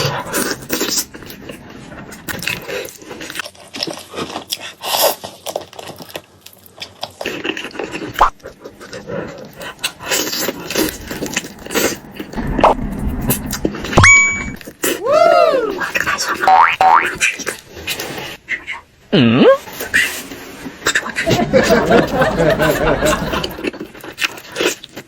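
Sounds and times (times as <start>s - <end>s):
chewing and slurping food: 0.0s - 13.8s, 22.6s - 25.0s.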